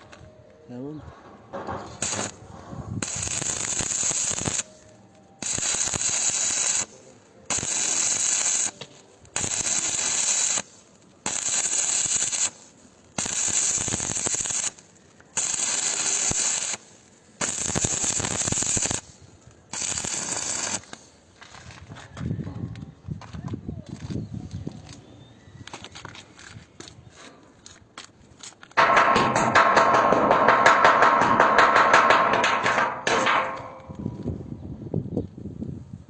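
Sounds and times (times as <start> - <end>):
crackling welding arc: 1.9 - 21.3.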